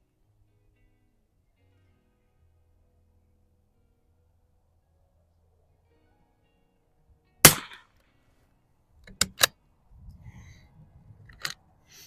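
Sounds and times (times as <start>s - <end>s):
rifle shot: 7.4s - 7.8s
rifle bolt clicks: 9.0s - 9.6s.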